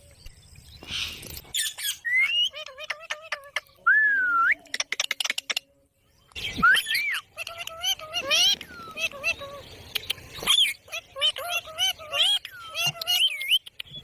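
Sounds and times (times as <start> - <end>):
parrot calling: 6.7 - 13.6.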